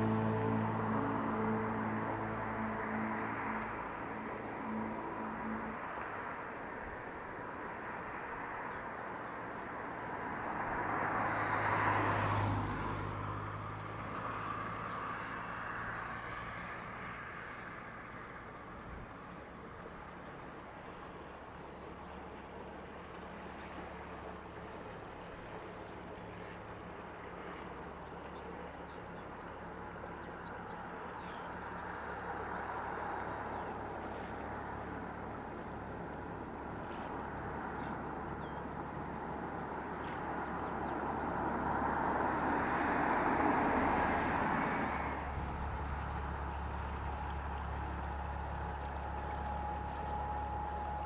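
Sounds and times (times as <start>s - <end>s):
motor boat engine hum: 0.0s - 51.0s
rushing water wash: 19.6s - 51.0s.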